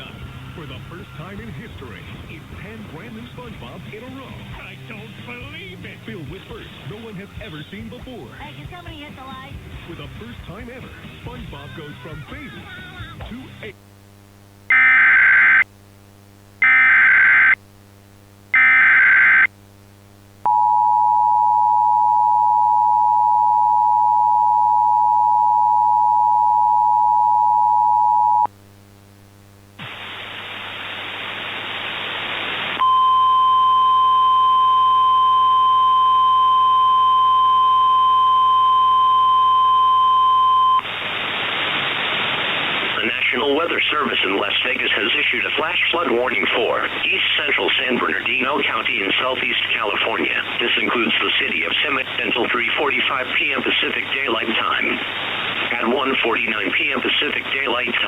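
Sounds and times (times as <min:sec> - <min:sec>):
radio static: 0:00.0 - 0:14.1, 0:29.5 - 0:33.0, 0:36.2 - 0:58.0.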